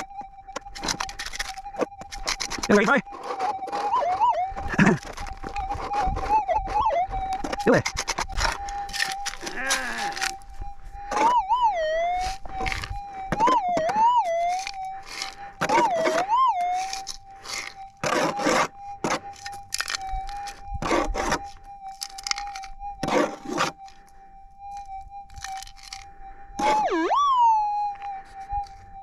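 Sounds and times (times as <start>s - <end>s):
metal detector warbling hum: 0.0s - 19.4s
digging tool scraping gravelly soil: 0.8s - 6.9s, 7.6s - 10.4s, 12.1s - 13.4s, 14.2s - 24.1s.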